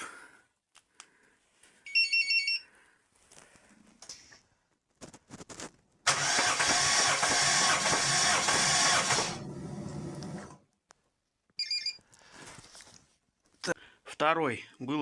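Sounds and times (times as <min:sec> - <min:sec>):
starter motor cranking engine: 0:06.1 - 0:10.6.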